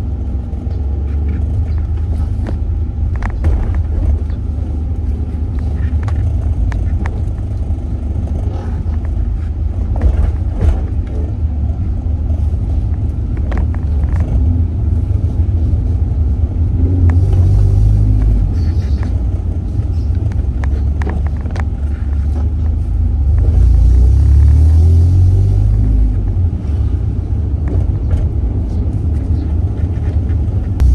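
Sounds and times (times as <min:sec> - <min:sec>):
car engine and road noise: 0:00.0 - 0:30.9.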